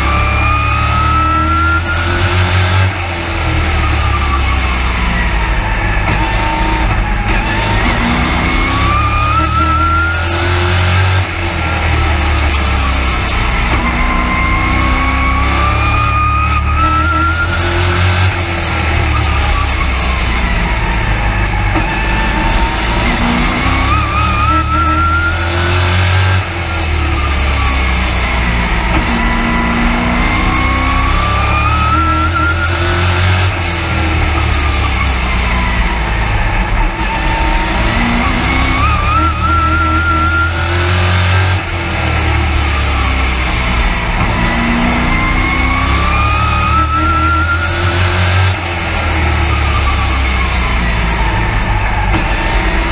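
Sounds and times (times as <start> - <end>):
high whine: 0.0 - 52.9
truck engine revving: 0.0 - 52.9.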